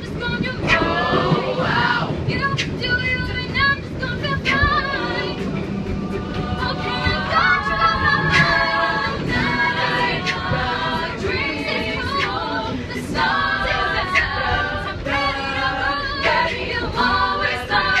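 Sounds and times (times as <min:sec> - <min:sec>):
a cappella group singing: 0:00.0 - 0:18.0
low rumble: 0:00.0 - 0:18.0.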